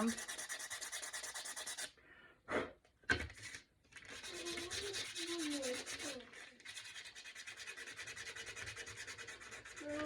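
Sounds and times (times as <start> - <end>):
sandpaper rubbing on wood: 0.0 - 1.9, 4.2 - 10.0.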